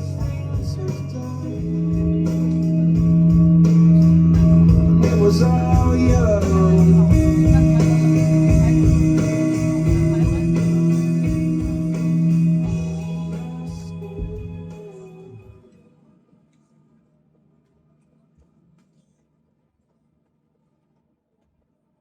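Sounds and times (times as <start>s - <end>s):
live band playing loudly: 0.0s - 14.6s
electric guitar chords: 0.0s - 15.5s.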